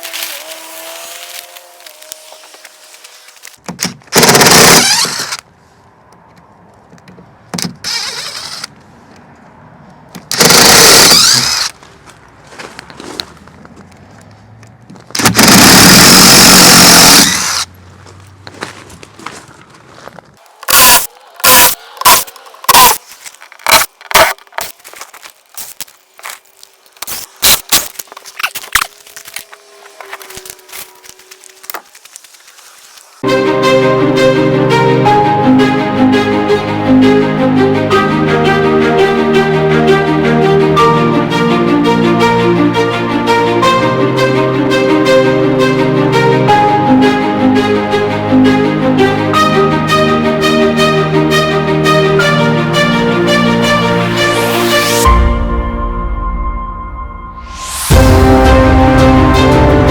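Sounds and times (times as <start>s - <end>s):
power tool running: 4.2s - 5.4s, 7.9s - 8.7s, 10.3s - 11.7s, 15.2s - 17.7s.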